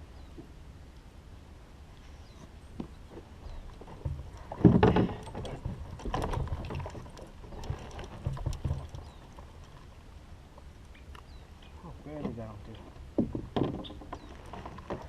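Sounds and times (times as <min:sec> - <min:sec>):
rustling of gear: 0:03.1 - 0:10.0, 0:13.8 - 0:15.0.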